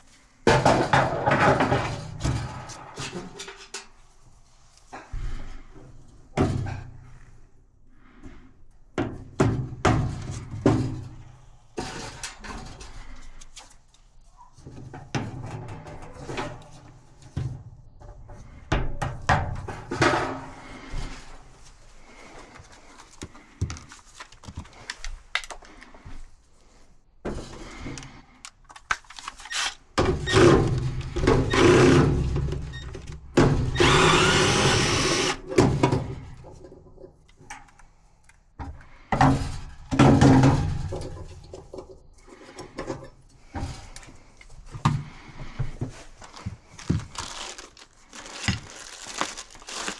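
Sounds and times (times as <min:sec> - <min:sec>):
parts and tools clattering: 0:00.5 - 0:04.1, 0:18.1 - 0:26.4, 0:27.2 - 0:38.0, 0:38.9 - 0:49.9
steady mechanical noise: 0:33.5 - 0:35.5.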